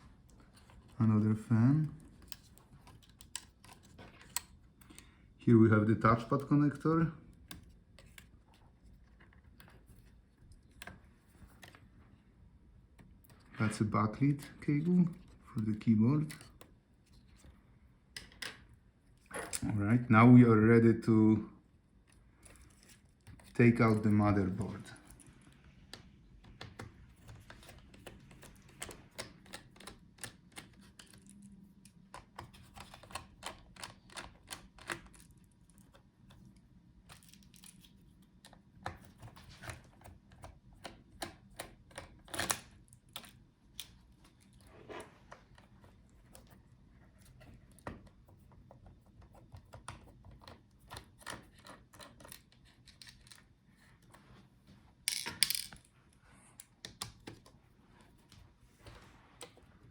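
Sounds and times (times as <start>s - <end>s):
parts clattering: 55.1s - 55.9s.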